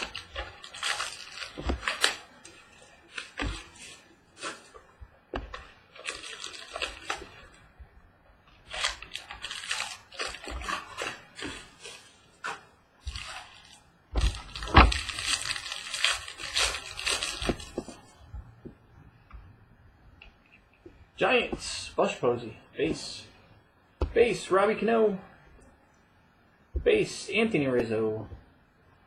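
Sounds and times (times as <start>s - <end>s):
plastic wrapper crinkling and tearing: 0.0s - 7.7s, 8.4s - 18.2s.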